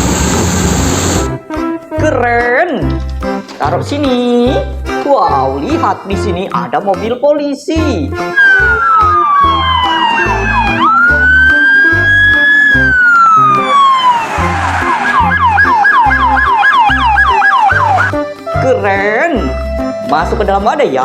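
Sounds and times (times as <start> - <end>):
background music with steady beat: 1.2 - 21.0
toy police siren: 8.4 - 18.2.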